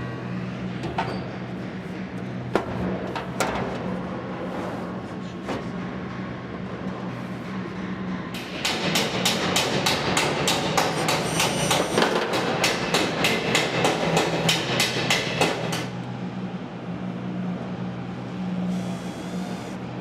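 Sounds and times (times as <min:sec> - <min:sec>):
hammer tapping on sheet metal: 0:08.4 - 0:15.9.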